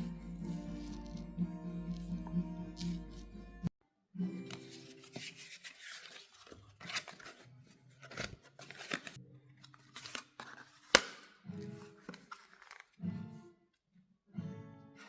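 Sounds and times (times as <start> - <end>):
paper rustling and scraping: 0.0 - 1.2, 2.8 - 3.3, 4.5 - 13.0
sharp paper snap: 8.1 - 9.2, 9.8 - 11.4.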